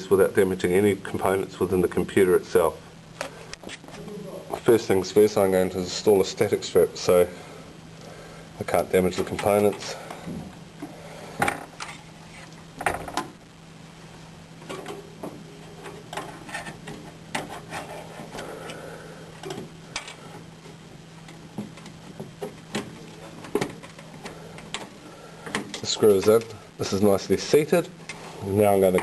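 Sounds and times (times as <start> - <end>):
steady low hum: 0.0 - 29.0
computer hardware clicks and scrapes: 15.7 - 18.5.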